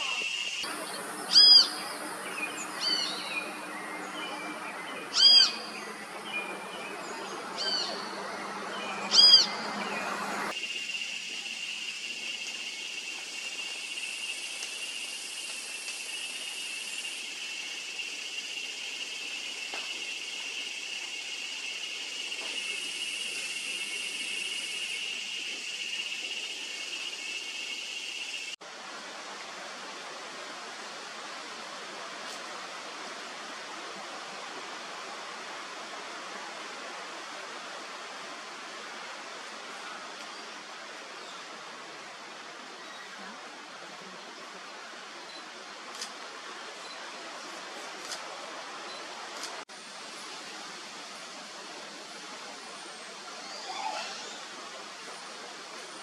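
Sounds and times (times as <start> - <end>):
high-pitched buzzing chorus: 0.0 - 17.4
birds calling: 0.6 - 10.5.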